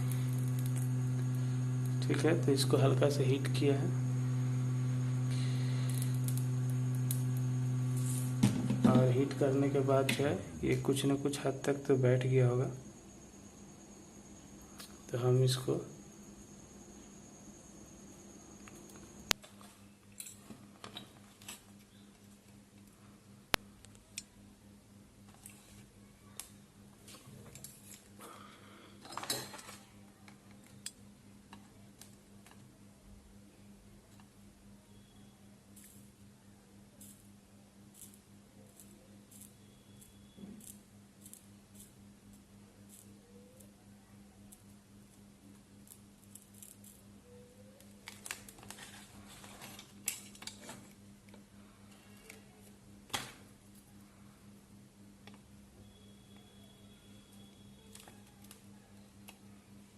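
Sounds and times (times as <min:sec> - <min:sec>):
steady low hum: 0:00.0 - 0:27.0
low electrical hum: 0:00.0 - 0:59.9.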